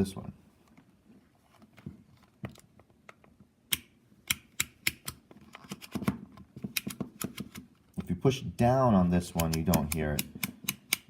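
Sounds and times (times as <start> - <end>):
rotary dial clicking: 9.4 - 11.0.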